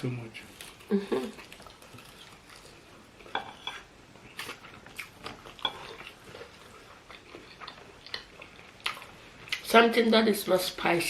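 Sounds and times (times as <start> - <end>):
chewing food: 0.5 - 9.7.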